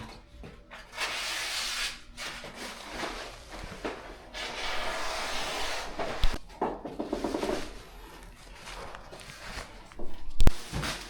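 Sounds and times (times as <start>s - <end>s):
rough rustling and scraping: 2.5s - 6.4s.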